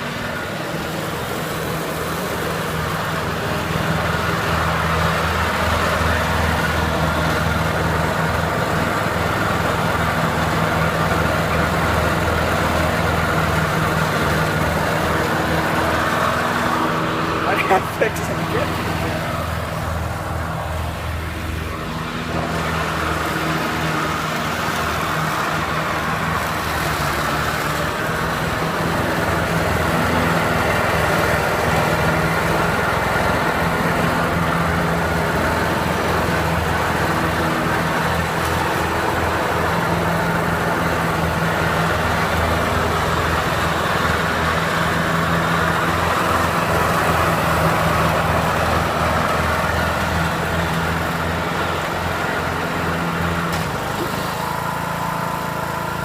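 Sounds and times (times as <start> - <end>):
riding lawnmower engine running: 0.0 - 56.0.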